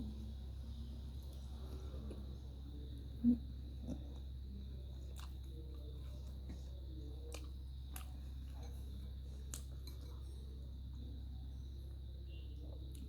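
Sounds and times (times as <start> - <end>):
faint high whine: 0.0 - 13.0
steady low hum: 0.0 - 13.0
person chewing food: 3.7 - 10.3.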